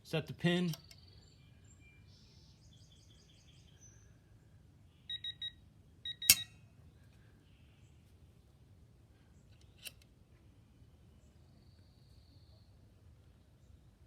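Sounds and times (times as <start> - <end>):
faint electronic chirps: 5.1 - 6.6
short electronic beeps: 5.1 - 6.6
torque wrench click: 6.2 - 6.5.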